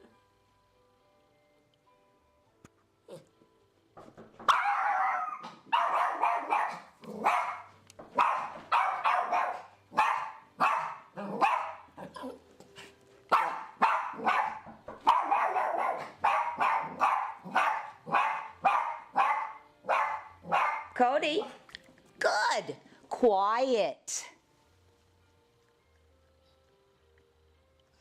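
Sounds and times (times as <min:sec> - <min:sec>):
small dog barking: 0:04.5 - 0:12.2, 0:13.3 - 0:21.6.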